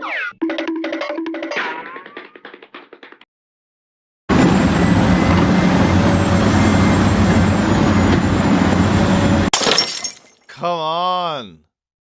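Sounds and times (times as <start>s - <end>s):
diesel engine running: 4.3s - 9.5s.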